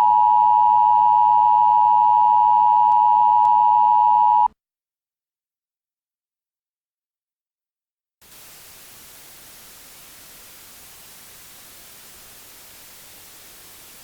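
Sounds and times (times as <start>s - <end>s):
static hiss: 8.2s - 14.0s.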